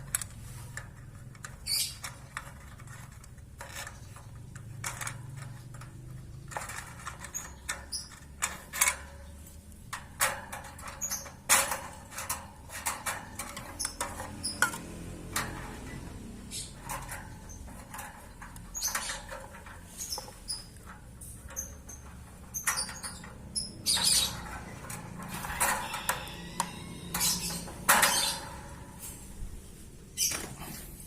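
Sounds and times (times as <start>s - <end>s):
birdcage clicks and rattles: 0.0s - 29.4s
high squeaks: 1.6s - 3.0s, 10.2s - 29.3s.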